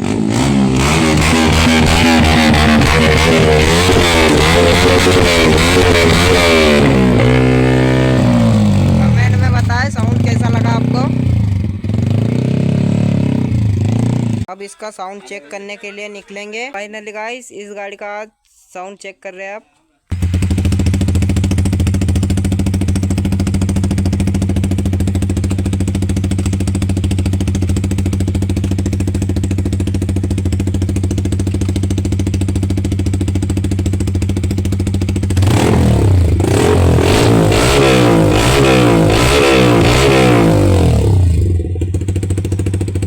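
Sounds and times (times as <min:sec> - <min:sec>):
motorcycle engine idling and revving: 0:00.0 - 0:14.5, 0:20.1 - 0:43.0.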